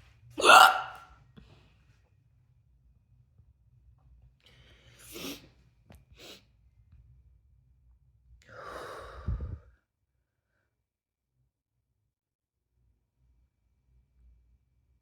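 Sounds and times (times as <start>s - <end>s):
person hiccuping and breathing: 0.4s - 1.0s
person sighing: 0.4s - 1.0s.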